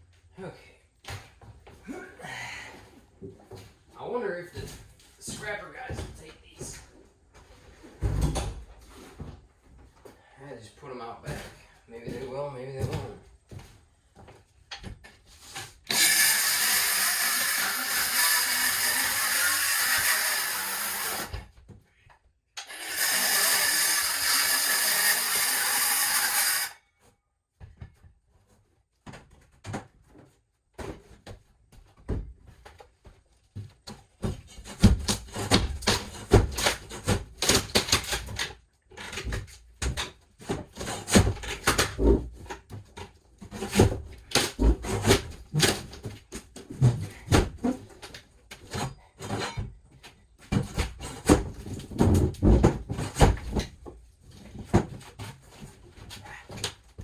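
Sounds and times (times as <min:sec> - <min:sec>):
knocks clanks and scraping: 0:33.8 - 0:56.2.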